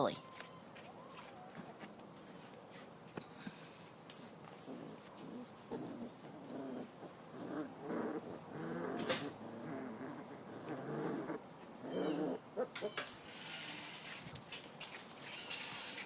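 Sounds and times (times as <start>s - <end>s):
puppies growling and whining: 4.6s - 14.2s.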